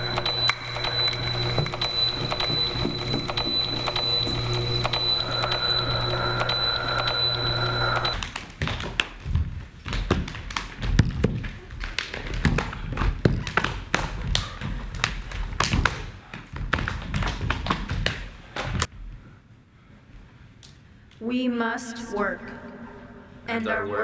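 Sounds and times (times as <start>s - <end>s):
sharp clicks: 0.0s - 8.4s
irregular tapping and thudding: 8.1s - 18.9s.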